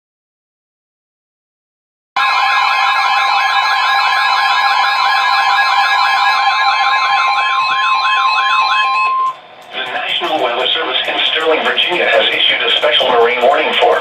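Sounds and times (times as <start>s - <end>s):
warbling siren-like alarm tone: 2.2s - 9.6s
steady high tone: 2.2s - 14.0s.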